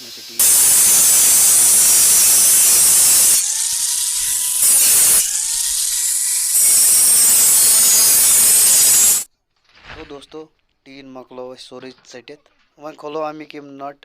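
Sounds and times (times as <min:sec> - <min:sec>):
power tool cutting with hiss: 0:00.0 - 0:09.3
motor whine: 0:00.4 - 0:09.3.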